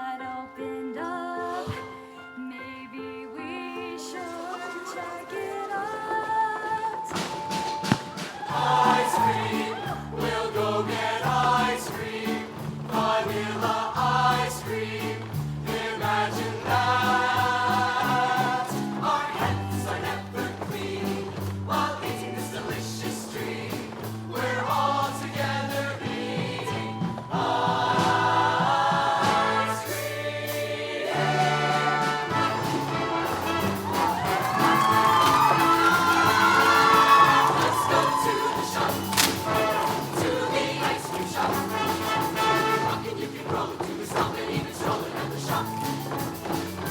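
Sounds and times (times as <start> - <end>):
choir singing: 3.6 - 46.9
drum beat: 7.2 - 46.9
bass line: 31.4 - 43.4.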